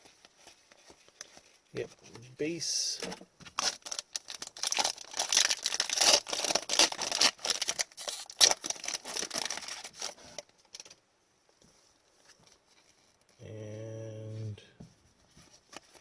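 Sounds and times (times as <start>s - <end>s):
foil wrapper crinkling and tearing: 3.5s - 11.0s.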